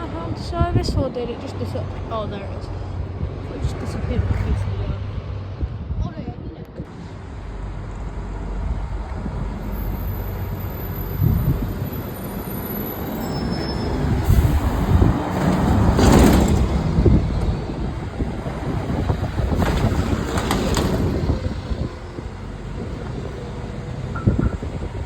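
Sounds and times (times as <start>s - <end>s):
bus passing by: 0.0s - 6.0s, 6.7s - 25.0s.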